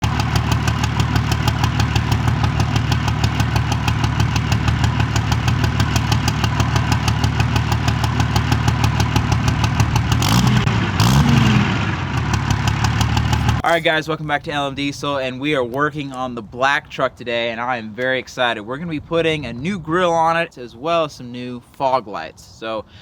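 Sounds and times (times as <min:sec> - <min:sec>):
diesel engine idling and revving: 0:00.0 - 0:13.8.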